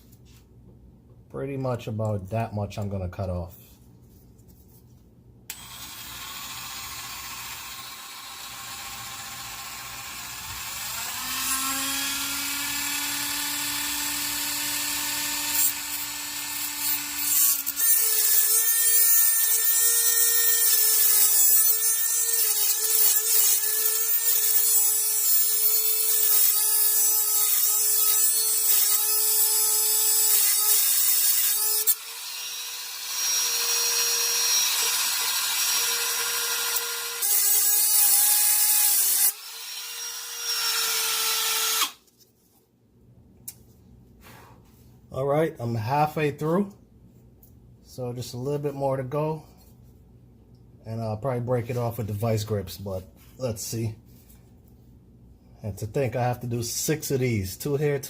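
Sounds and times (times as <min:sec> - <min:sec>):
rotary tool cutting metal: 0:05.5 - 0:42.0.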